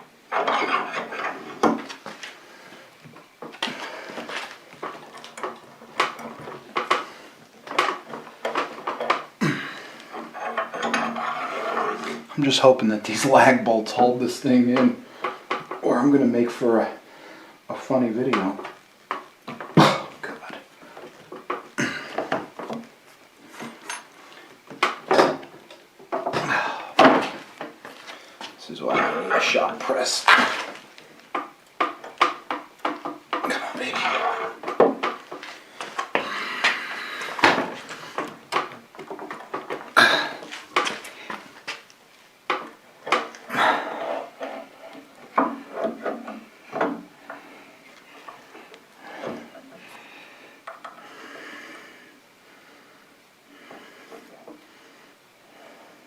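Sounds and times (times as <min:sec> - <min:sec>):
metal creaking strain: 0:00.2 - 0:01.9, 0:03.7 - 0:14.1, 0:33.0 - 0:35.5, 0:43.5 - 0:46.5
metal clanks and knocks: 0:00.3 - 0:02.0, 0:10.1 - 0:12.3
metal clunks and knocks: 0:00.3 - 0:02.0
metal scraping: 0:10.2 - 0:14.4.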